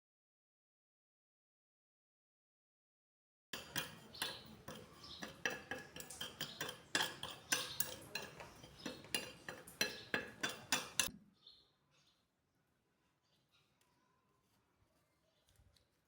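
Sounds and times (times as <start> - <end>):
utensil stirring in mixing bowl: 3.6 - 11.1.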